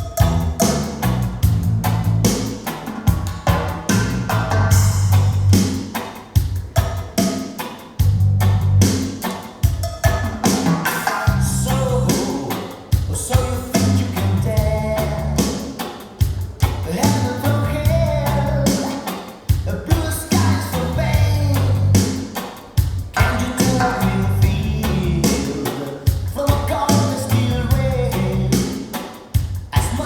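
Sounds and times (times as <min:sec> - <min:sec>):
bass line: 0:00.0 - 0:02.5, 0:03.1 - 0:05.8, 0:08.0 - 0:09.0, 0:11.3 - 0:12.6, 0:13.3 - 0:15.5, 0:16.7 - 0:18.8, 0:20.3 - 0:22.2, 0:23.2 - 0:25.6, 0:26.7 - 0:28.7
drum beat: 0:00.0 - 0:30.0
person singing: 0:11.0 - 0:15.7, 0:16.8 - 0:22.2, 0:23.2 - 0:28.8, 0:29.8 - 0:30.0.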